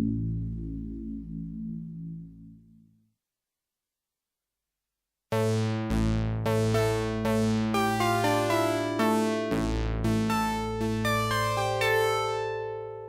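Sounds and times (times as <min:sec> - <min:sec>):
synthesizer bass notes: 0:00.0 - 0:02.8, 0:05.4 - 0:12.8
synthesizer percussive notes and chords: 0:05.4 - 0:12.7.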